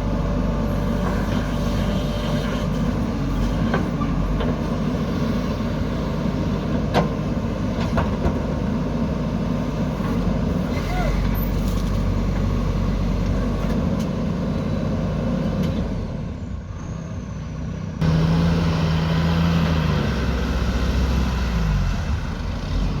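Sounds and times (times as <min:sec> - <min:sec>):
diesel engine working: 0:00.0 - 0:23.0.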